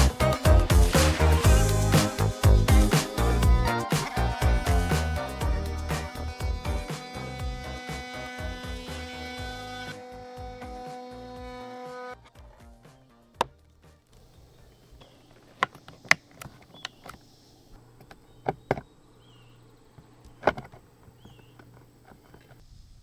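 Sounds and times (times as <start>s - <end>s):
faint steady hum: 13.6s - 23.0s.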